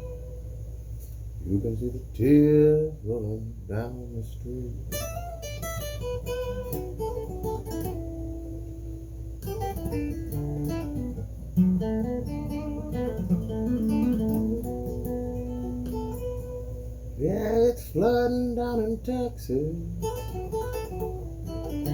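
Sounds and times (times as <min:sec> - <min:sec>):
blues guitar playing: 0:00.0 - 0:00.6, 0:04.2 - 0:21.9.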